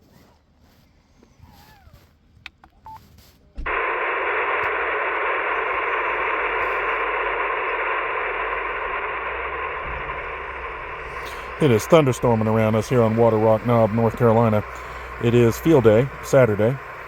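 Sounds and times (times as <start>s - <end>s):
radio receiver static: 3.6s - 17.0s.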